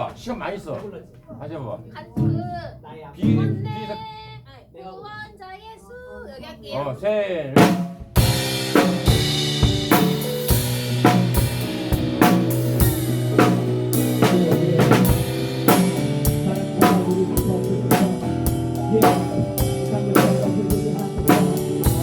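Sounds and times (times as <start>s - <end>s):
drum kit beat: 2.1s - 4.1s, 7.6s - 22.0s
live band playing: 7.6s - 22.0s.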